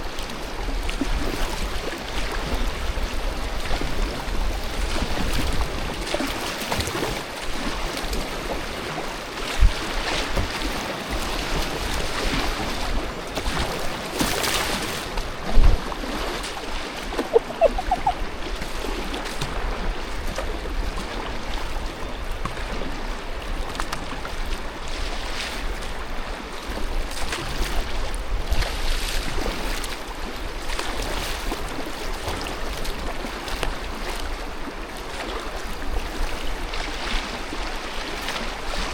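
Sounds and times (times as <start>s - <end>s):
paddle splashes: 0.0s - 38.9s
river water rushing: 8.7s - 20.1s.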